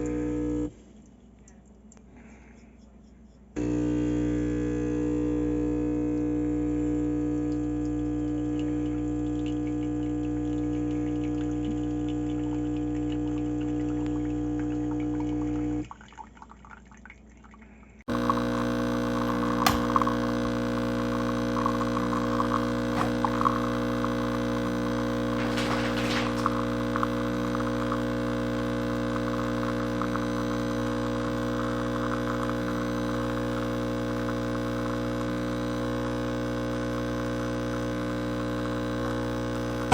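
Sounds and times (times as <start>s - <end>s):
espresso machine pump humming: 0.0s - 0.7s, 3.6s - 15.9s, 18.1s - 39.9s
coffee pouring and dripping: 7.3s - 38.7s.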